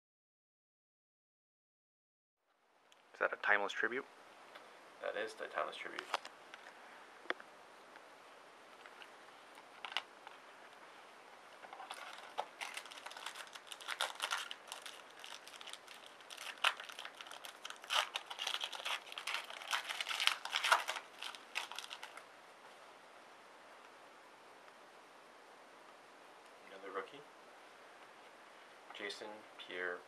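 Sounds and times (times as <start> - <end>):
plastic wrapper crinkling: 8.8 - 10.4, 11.6 - 22.3.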